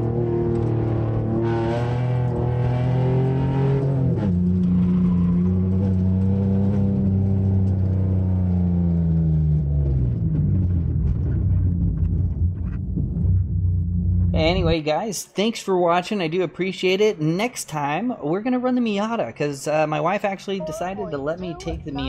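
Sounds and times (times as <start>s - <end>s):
car engine under hard acceleration: 0.0s - 14.5s.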